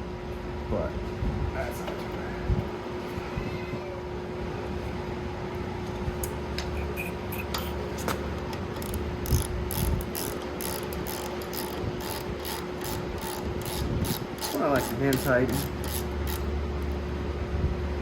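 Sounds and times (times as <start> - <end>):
ratchet wrench clicking: 8.7 - 16.5.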